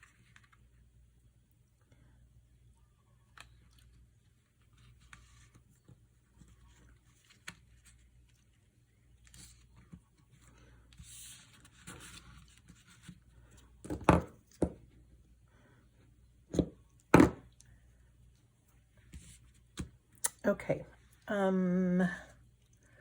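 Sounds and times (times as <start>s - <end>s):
paper and card rustling: 3.3s - 13.7s
knocks on a table: 16.6s - 17.4s.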